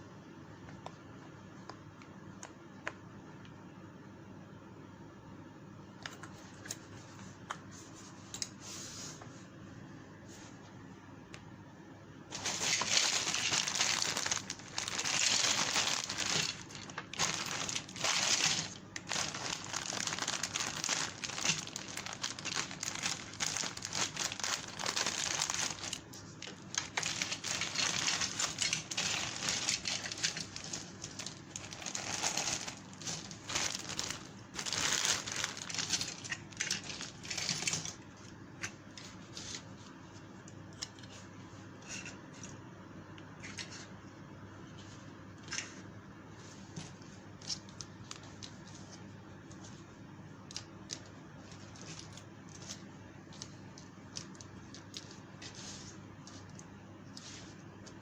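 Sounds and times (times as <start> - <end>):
plastic packaging crinkling: 12.3 - 38.0, 50.5 - 58.0.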